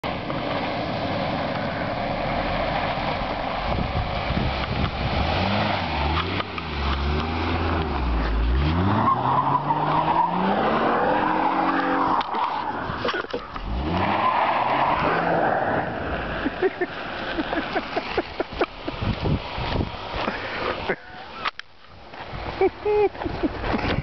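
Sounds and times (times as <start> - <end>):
tyre and road noise: 0.0 - 24.0
car engine revving: 1.1 - 18.8.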